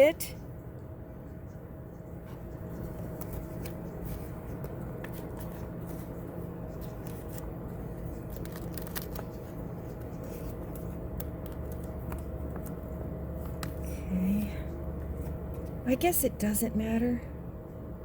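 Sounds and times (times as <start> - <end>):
steady background hum: 0.0 - 18.0
plastic packaging crinkling: 3.1 - 12.8.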